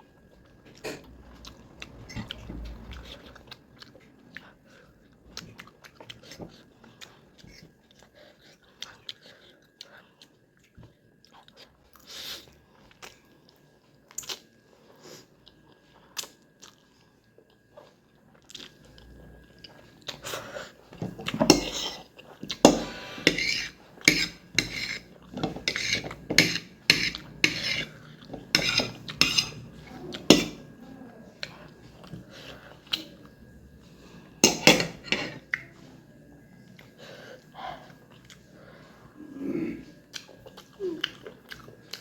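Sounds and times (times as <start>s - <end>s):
chewing: 0.4s - 33.5s, 36.7s - 38.8s, 40.0s - 42.0s
utensils clinking against a dish: 21.0s - 30.7s, 34.4s - 35.5s.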